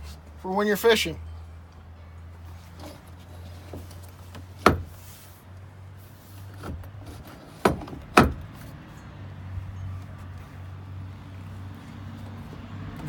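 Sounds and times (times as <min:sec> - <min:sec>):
sharp knocks on deck fittings: 0:04.6 - 0:05.0, 0:07.6 - 0:08.5.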